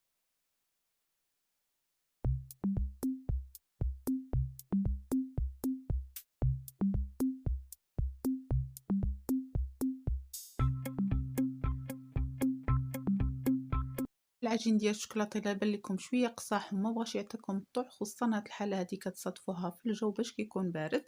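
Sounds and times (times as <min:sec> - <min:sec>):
drum-machine beat: 0:02.3 - 0:14.1
low bass line: 0:10.6 - 0:14.1.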